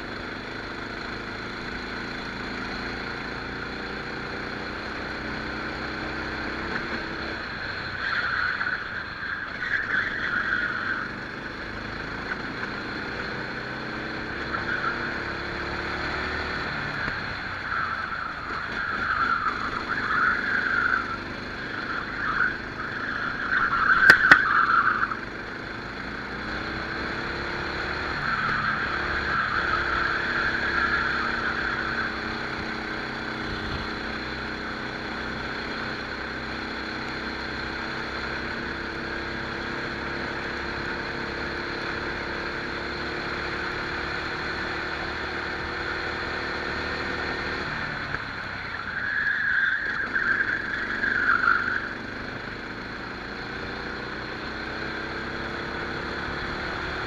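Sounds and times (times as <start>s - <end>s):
kart engine: 0.0s - 57.0s
tyres squealing: 17.6s - 25.7s.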